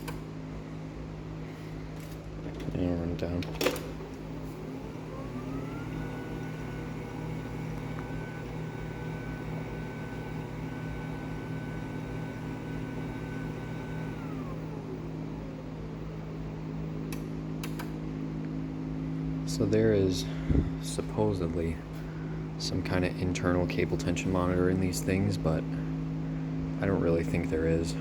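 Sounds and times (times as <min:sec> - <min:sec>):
garage door opener motor whine: 0:00.0 - 0:28.0
opener click: 0:17.1 - 0:18.0.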